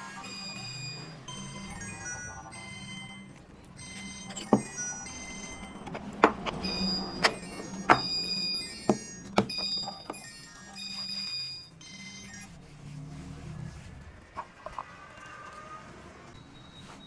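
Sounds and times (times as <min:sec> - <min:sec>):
background music: 0:00.0 - 0:11.0.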